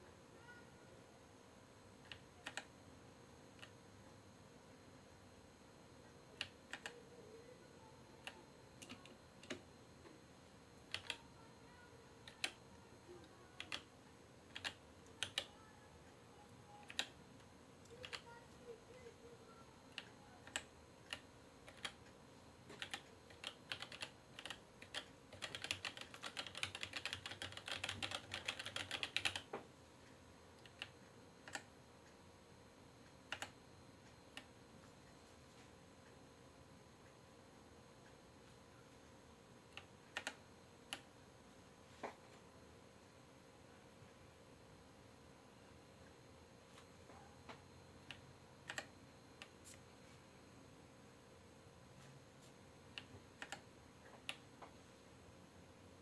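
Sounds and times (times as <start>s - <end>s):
mechanical keyboard keystrokes: 2.1s - 2.7s, 6.4s - 7.0s, 10.9s - 11.2s, 14.5s - 15.5s, 16.7s - 17.1s, 19.9s - 22.0s, 22.7s - 29.5s, 53.0s - 53.6s.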